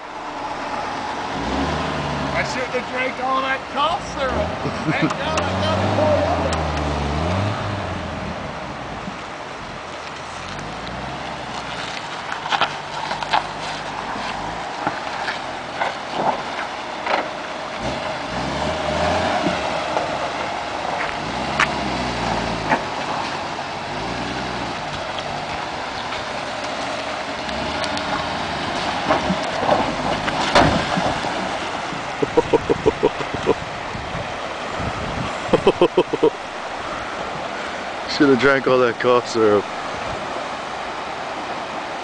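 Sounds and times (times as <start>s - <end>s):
car engine running: 3.8s - 33.6s.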